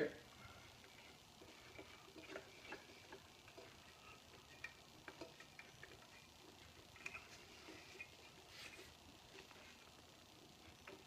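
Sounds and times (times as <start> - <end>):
metal fittings clicking and tapping: 0.8 - 8.3.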